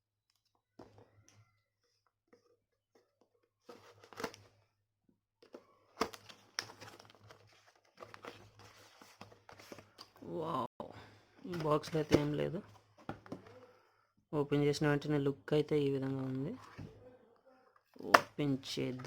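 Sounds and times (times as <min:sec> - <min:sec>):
packaging rustling and crinkling: 0:05.4 - 0:10.2.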